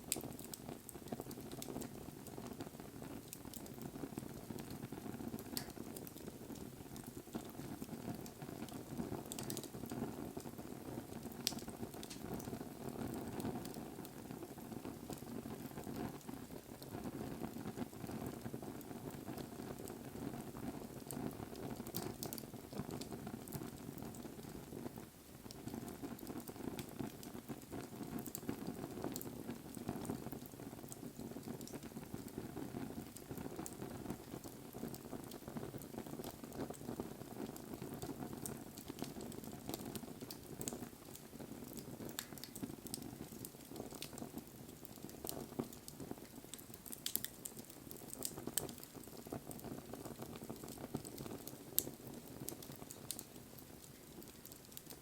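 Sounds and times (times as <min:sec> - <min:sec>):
campfire flame rustle: 0:00.0 - 0:55.0
fire crackling and popping: 0:00.0 - 0:55.0.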